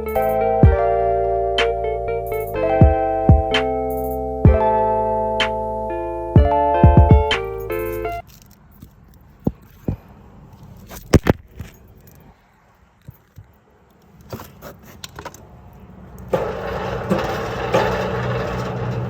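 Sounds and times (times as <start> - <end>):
metallic clinks of parts: 7.6 - 9.8
machine humming: 16.3 - 19.0.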